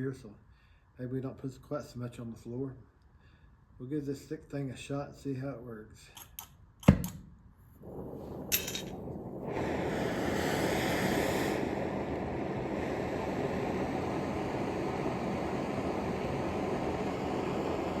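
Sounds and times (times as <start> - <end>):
cutting torch roaring: 7.8 - 18.0.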